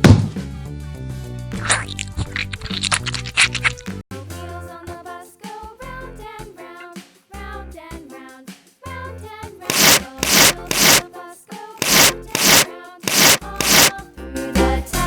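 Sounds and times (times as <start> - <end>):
rasping scraping strokes: 11.8 - 13.9
background music: 14.2 - 15.0.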